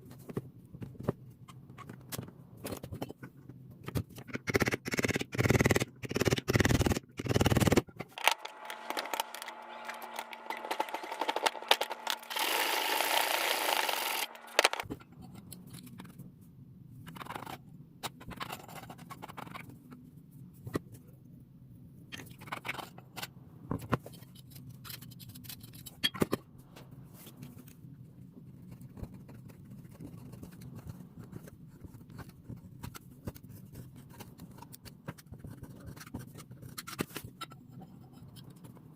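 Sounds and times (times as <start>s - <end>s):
faint hum: 5.5s - 24.6s.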